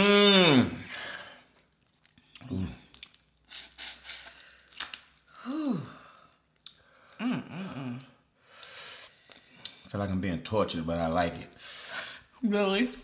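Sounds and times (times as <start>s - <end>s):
person moaning: 5.4s - 6.0s, 7.2s - 8.1s
breathy sighs: 5.4s - 8.8s.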